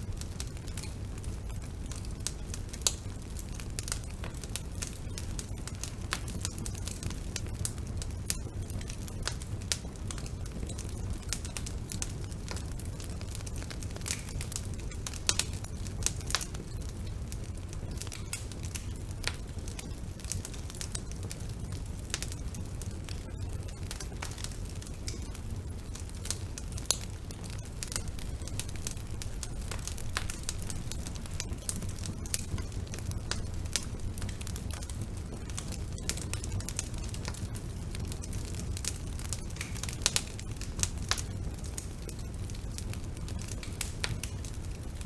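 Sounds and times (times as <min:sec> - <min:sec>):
crackling and popping logs: 0:00.0 - 0:45.0
low rumble of fire flames: 0:00.0 - 0:45.0.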